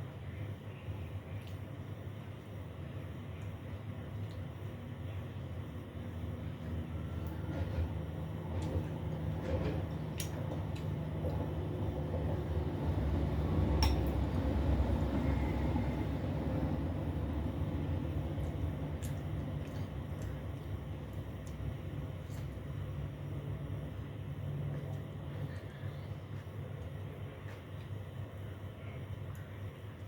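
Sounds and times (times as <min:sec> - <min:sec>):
low background rumble: 0:00.0 - 0:30.0
tableware clinking: 0:13.8 - 0:14.1.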